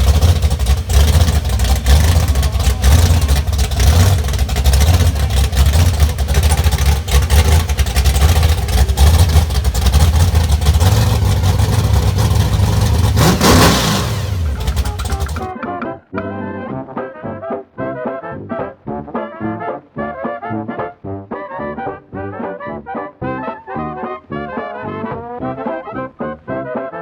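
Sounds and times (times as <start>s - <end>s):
car engine rumbling: 0.0s - 15.5s.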